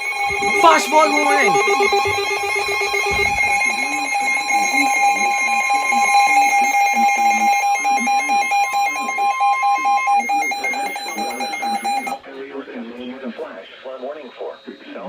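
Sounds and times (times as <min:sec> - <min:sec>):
emergency alert tones: 0:00.3 - 0:03.5.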